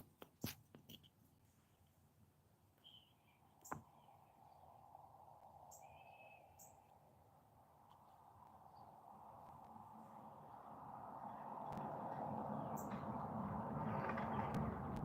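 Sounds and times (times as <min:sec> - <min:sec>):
soft bird chirps: 0:02.6 - 0:09.7.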